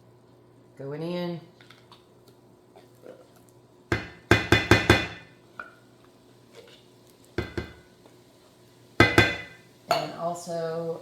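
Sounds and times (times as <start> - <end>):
can knocking against cookware: 3.9 - 5.3, 7.4 - 7.8, 9.0 - 10.1.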